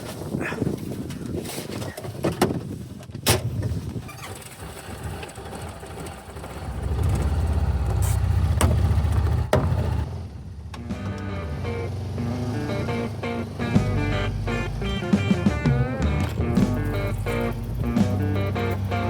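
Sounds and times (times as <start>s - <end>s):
knocks and clunks of people boarding: 0.0s - 5.6s, 6.3s - 10.0s, 15.2s - 19.0s
engine low steady rumble: 4.6s - 19.0s.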